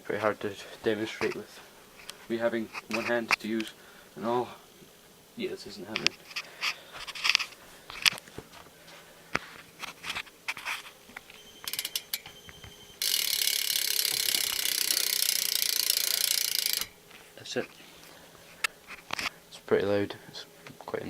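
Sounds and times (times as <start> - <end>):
freewheeling hub ratchet buzz: 11.4 - 17.0.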